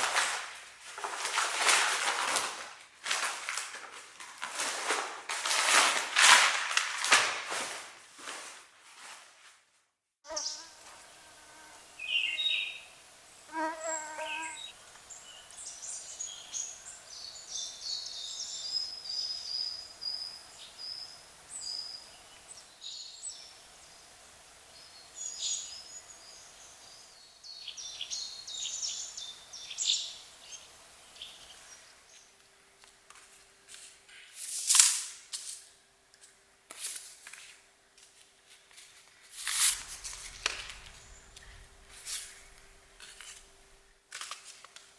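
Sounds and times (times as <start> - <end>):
songbirds chirping and trilling: 10.3 - 32.4, 39.7 - 43.9
short loud crackling noise: 39.3 - 44.0
low steady hum: 39.4 - 44.0.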